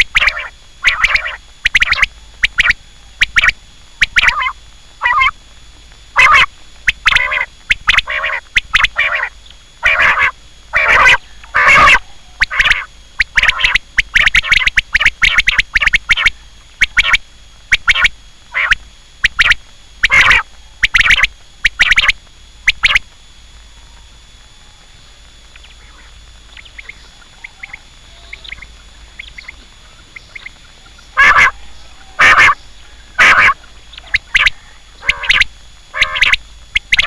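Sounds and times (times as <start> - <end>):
quail calling: 0.0 - 5.4, 6.1 - 23.0, 25.5 - 37.0.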